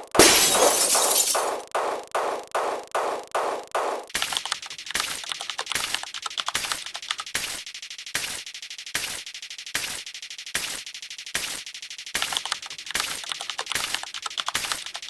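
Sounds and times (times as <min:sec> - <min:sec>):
sharp loud crack: 0:00.0 - 0:01.6
fast rattling clicks: 0:12.2 - 0:15.0.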